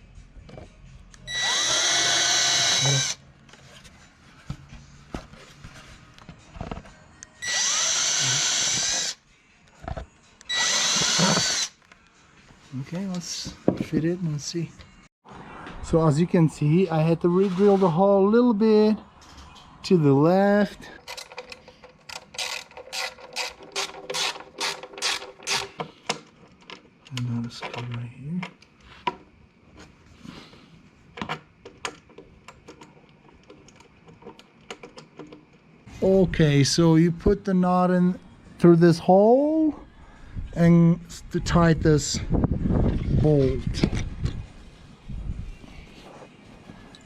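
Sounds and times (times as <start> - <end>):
power drill boring plastic: 1.3 - 3.2, 7.4 - 9.2, 10.5 - 11.7
hand ratchet clicking: 21.1 - 25.7.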